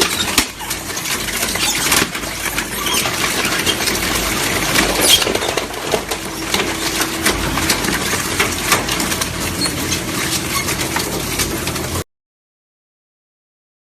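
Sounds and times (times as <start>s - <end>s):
shredder machine hum: 0.0s - 12.0s.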